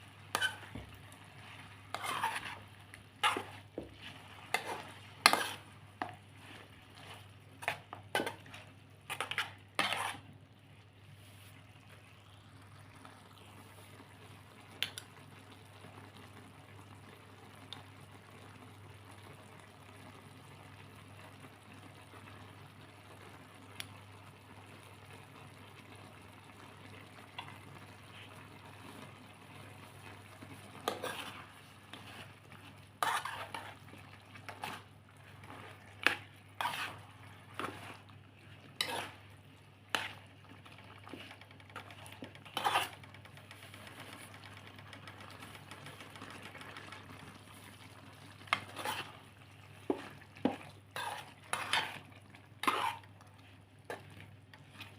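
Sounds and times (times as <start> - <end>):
food sizzling in a pan: 0.0 - 10.8, 11.5 - 54.9
utensil scraping a pan: 0.2 - 10.3, 30.5 - 39.3, 39.9 - 40.3, 41.0 - 44.4, 48.4 - 54.9.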